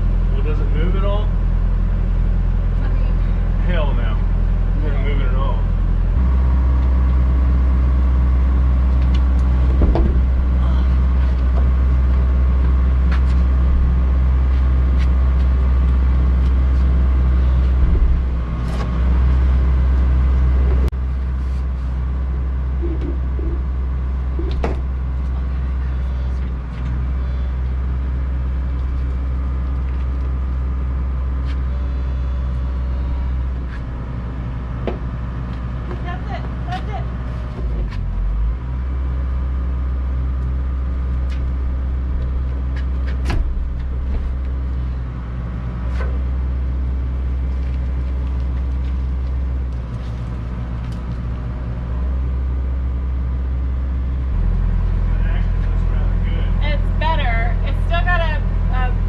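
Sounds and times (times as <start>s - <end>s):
engine-like hum: 0.0s - 59.0s
short knocks: 9.7s - 10.6s.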